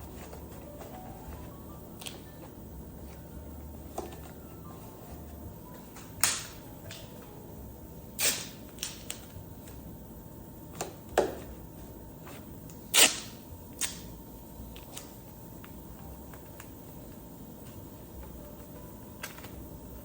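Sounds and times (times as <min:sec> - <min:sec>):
masking tape ripping off roll: 0:08.2 - 0:09.3, 0:12.9 - 0:14.0.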